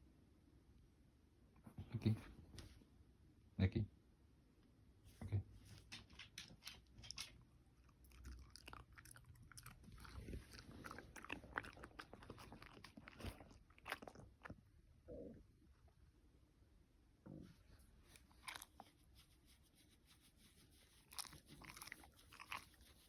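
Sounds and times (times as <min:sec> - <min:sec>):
dog chewing food: 0:07.1 - 0:14.7, 0:18.2 - 0:18.8, 0:21.1 - 0:23.0.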